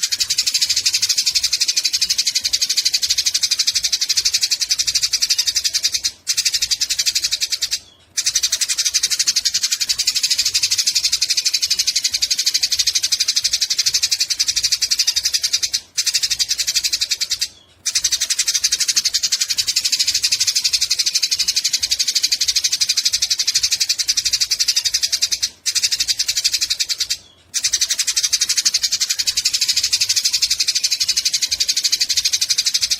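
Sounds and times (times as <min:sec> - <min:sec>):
sparrows chattering: 0:00.0 - 0:32.9.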